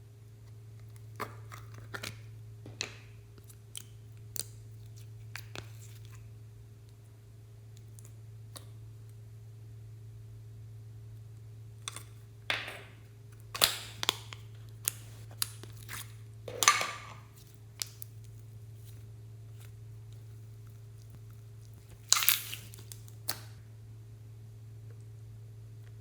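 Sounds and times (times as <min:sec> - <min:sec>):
steady low hum: 0:00.0 - 0:26.0
slime squelching and popping: 0:11.9 - 0:23.6.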